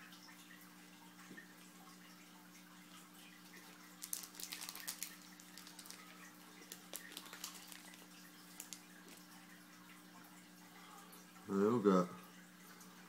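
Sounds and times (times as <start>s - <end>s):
faint steady hum: 0.0s - 13.0s
trading cards clicking and rustling: 4.0s - 6.0s, 6.7s - 9.2s.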